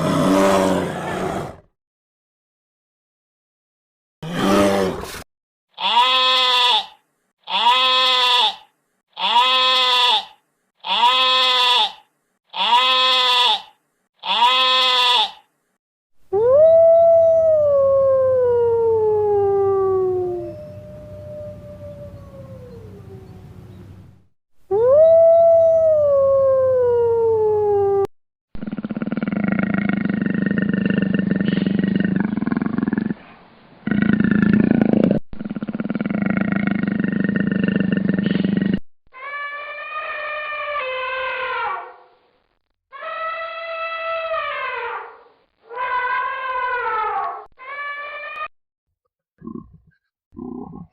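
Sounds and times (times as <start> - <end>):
wild animal rising and falling call: 0.0 - 1.7, 4.2 - 5.2, 43.0 - 48.5
goat bleating: 5.8 - 15.5.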